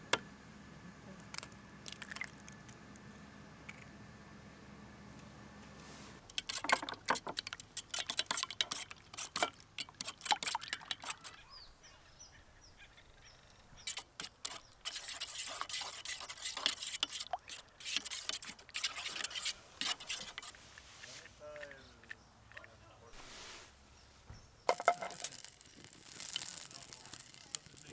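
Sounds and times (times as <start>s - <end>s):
clicking and scraping of handling: 5.2s - 11.7s, 13.4s - 27.9s.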